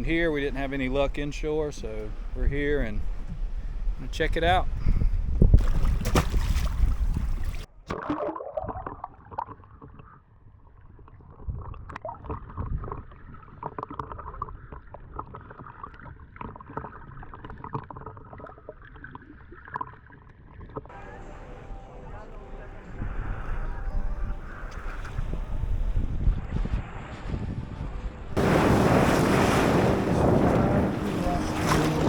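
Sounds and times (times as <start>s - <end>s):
muffled water sloshing: 0.0s - 32.0s
small clicks and splashes: 5.6s - 20.9s.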